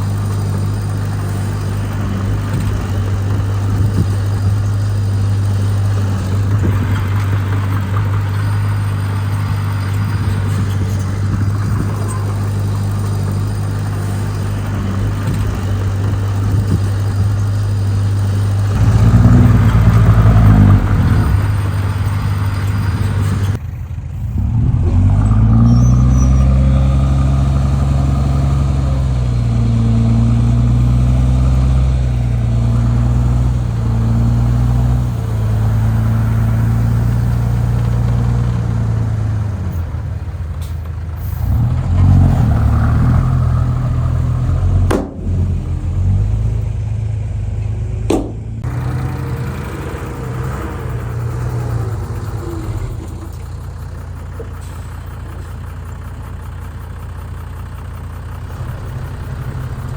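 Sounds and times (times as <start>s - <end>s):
heavy diesel engine working: 0.0s - 59.9s
sharp knocks: 44.9s - 45.6s, 48.1s - 48.6s.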